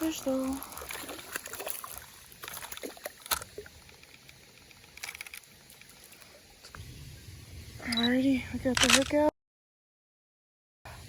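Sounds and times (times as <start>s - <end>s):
water splashing: 0.0s - 7.3s
small clicks: 2.8s - 6.0s, 8.7s - 9.2s.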